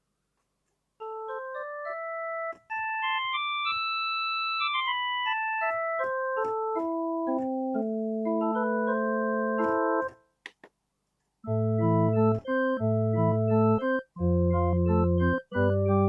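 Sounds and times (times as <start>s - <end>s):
synthesizer keyboard notes: 4.7s - 10.1s, 11.5s - 16.0s.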